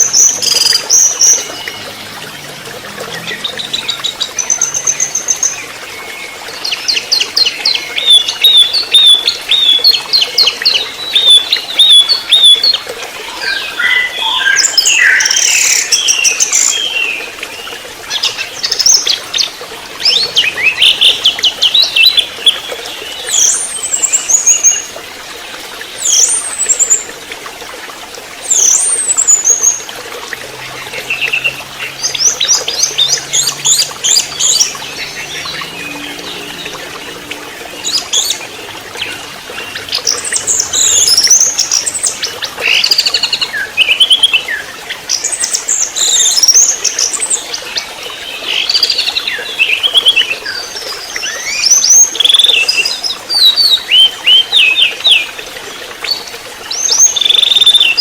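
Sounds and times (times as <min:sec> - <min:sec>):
thrush singing trills and whistles: 0:03.1 - 0:17.4.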